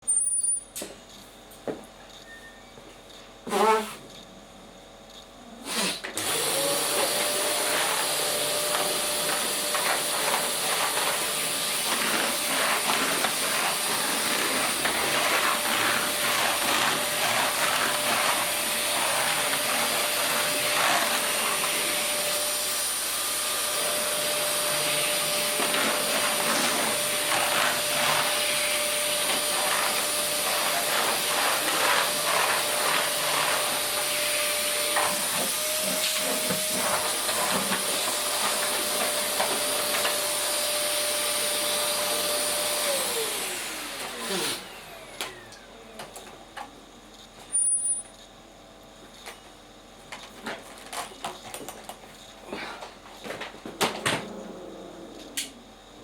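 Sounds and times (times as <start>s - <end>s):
vacuum cleaner motor running: 5.6s - 46.5s.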